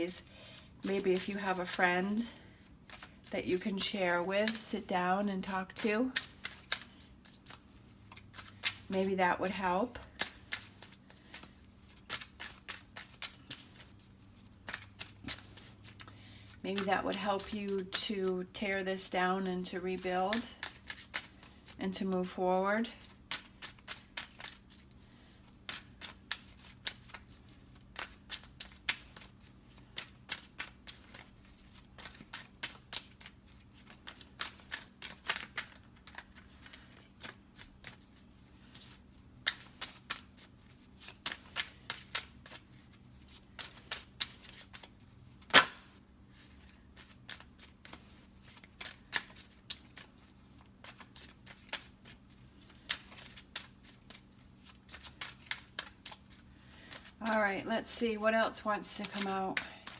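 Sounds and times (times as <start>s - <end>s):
cards being shuffled: 0.0s - 18.8s, 20.0s - 22.3s, 22.9s - 59.9s
card snap: 45.5s - 45.8s.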